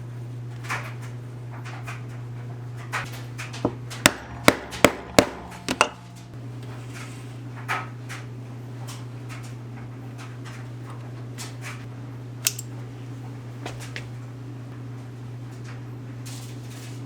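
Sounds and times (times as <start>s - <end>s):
steady low hum: 1.2s - 16.1s
mallet striking leather tool: 4.1s - 6.0s.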